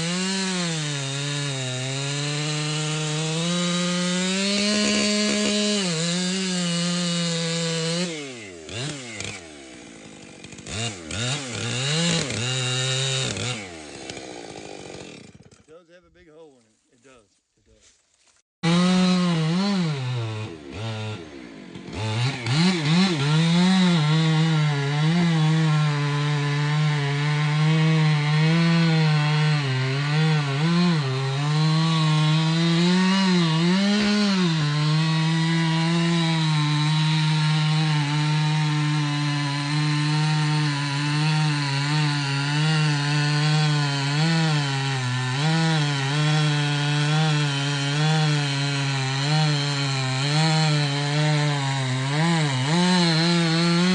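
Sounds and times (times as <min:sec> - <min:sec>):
chainsaw cutting wood: 0:00.0 - 0:16.5, 0:18.2 - 0:53.9.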